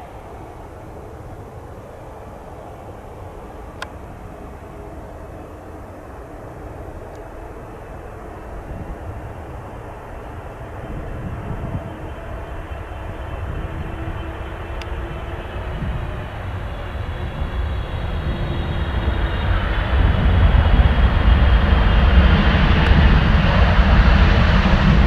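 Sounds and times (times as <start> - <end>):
jet engine rumble: 0.0 - 25.0.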